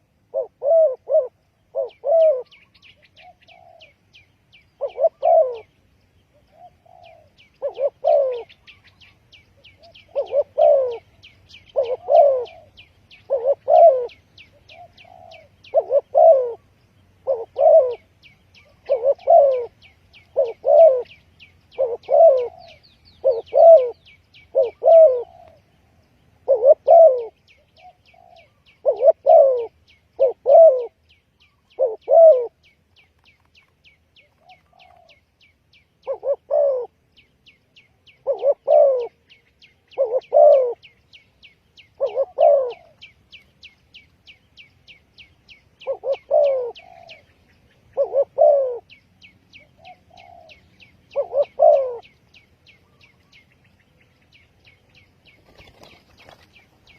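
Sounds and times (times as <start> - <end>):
dove cooing: 0.0 - 4.0, 4.7 - 32.7, 34.2 - 35.2, 36.0 - 37.0, 38.0 - 41.0, 41.8 - 43.4, 45.8 - 53.6.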